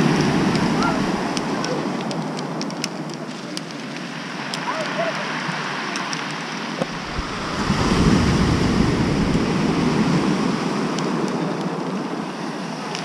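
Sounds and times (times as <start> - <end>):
wind buffeting microphone: 0.0 - 4.1, 6.7 - 12.9
waves breaking on pebble beach: 0.0 - 13.0.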